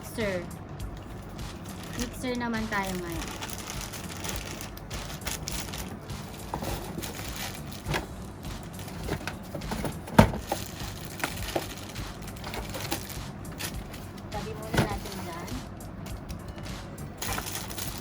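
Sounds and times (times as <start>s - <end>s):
packaging being opened: 2.8s - 8.1s, 8.8s - 14.0s.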